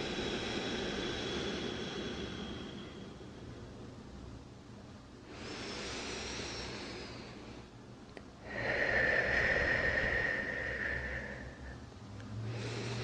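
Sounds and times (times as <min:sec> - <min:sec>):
person breathing deeply: 0:00.0 - 0:04.0, 0:05.2 - 0:13.0.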